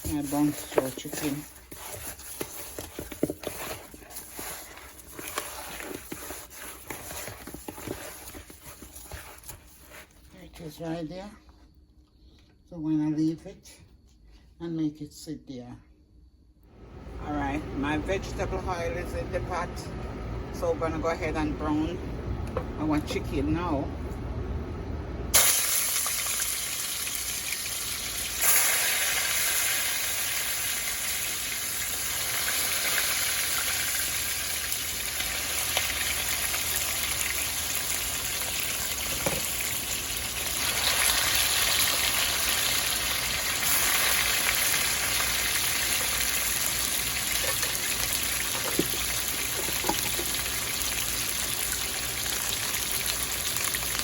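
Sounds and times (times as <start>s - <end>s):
chicken frying in oil: 0.0s - 10.0s, 25.4s - 54.0s.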